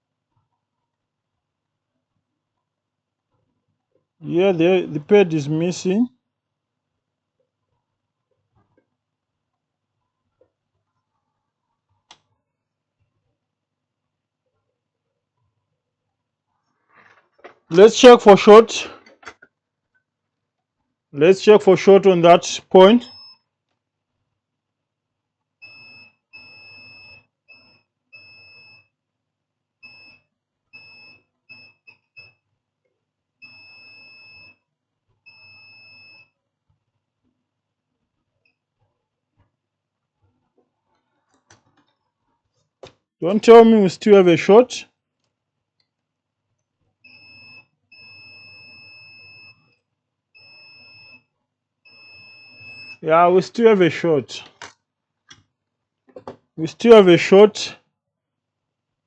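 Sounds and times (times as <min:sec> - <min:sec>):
multimeter continuity beeps: 0:47.1 - 0:49.8, 0:50.4 - 0:51.3, 0:51.9 - 0:53.1.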